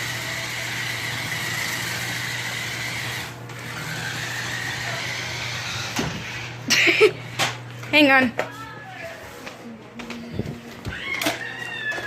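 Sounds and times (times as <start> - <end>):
toy car electric motor whining: 0.0 - 6.6.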